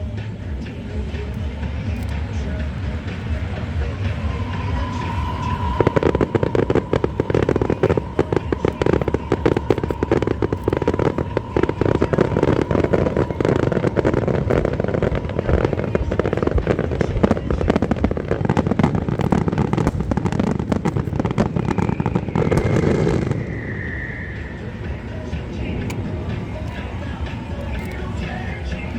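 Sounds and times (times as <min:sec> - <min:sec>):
fireworks crackling bursts: 0:00.0 - 0:28.9.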